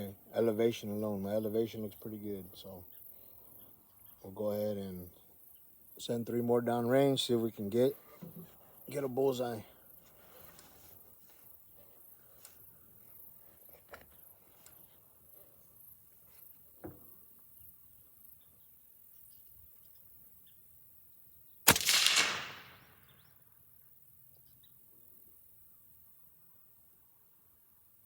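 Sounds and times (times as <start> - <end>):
rifle handling clicks: 21.7 - 23.0
suppressed rifle shot: 21.7 - 23.2.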